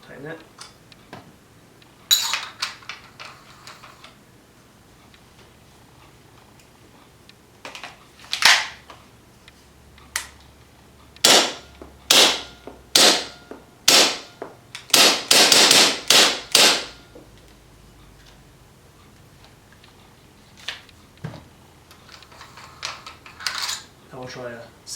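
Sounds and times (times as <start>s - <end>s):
airsoft gun shots: 11.2s - 14.3s, 14.9s - 17.0s.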